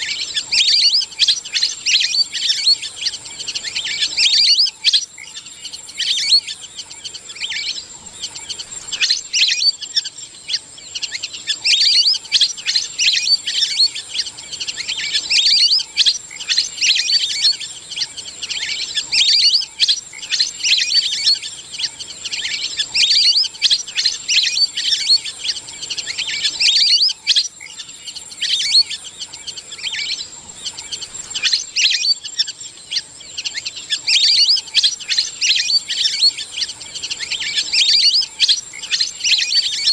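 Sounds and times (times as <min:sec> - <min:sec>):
ducks whistled chirps: 0:00.0 - 0:39.9.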